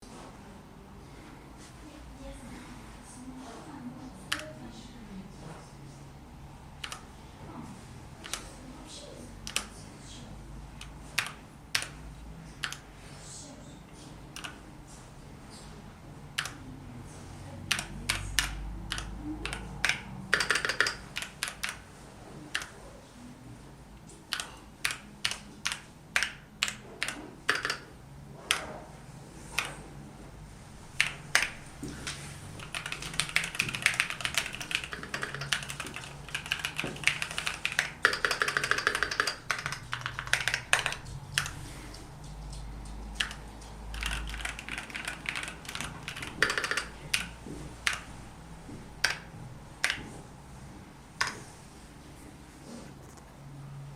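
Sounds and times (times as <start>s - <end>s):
mechanical keyboard typing: 4.2s - 4.6s, 6.8s - 7.2s, 8.1s - 8.6s, 9.4s - 9.8s, 10.7s - 13.0s, 14.3s - 14.6s, 16.3s - 16.6s, 17.6s - 22.8s, 24.1s - 28.8s, 29.5s - 30.0s, 30.8s - 48.2s, 48.9s - 50.2s, 51.2s - 51.4s.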